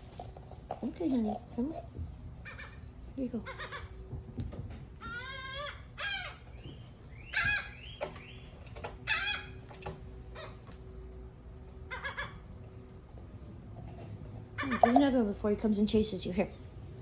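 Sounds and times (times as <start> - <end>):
gulls calling: 5.0 - 10.7, 11.8 - 12.6.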